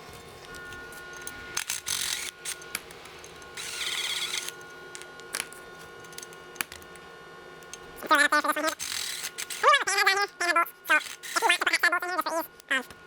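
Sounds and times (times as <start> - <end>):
rapid ratchet clicking: 1.2 - 4.8, 7.6 - 9.9, 10.8 - 11.7.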